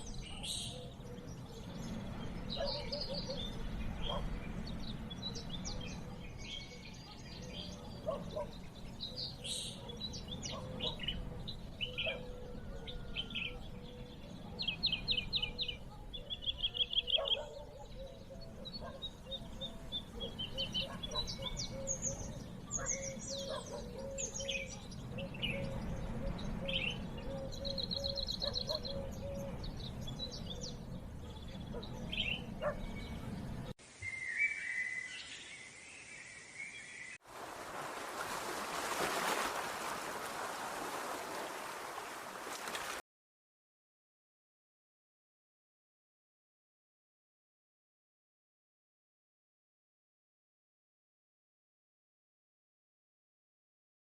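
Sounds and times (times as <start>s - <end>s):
birds chirping: 0.0s - 43.0s.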